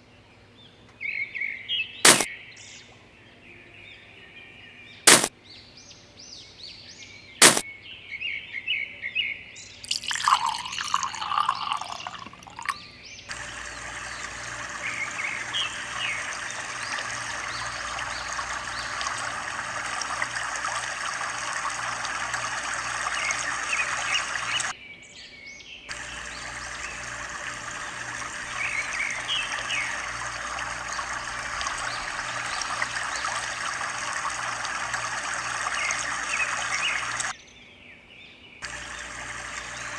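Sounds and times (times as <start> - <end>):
sharp click: 2.1 - 2.3, 5.1 - 5.3, 7.4 - 7.6
birds chirping: 9.9 - 24.7, 25.8 - 37.3
water splashing: 9.9 - 24.7, 25.9 - 37.3
water trickling: 9.9 - 24.7, 25.9 - 37.3.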